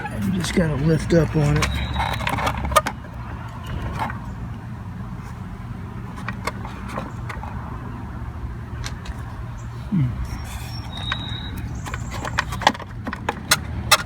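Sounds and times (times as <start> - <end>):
plastic clicks and knocks: 0.4 - 4.6, 5.2 - 7.6, 10.7 - 14.0.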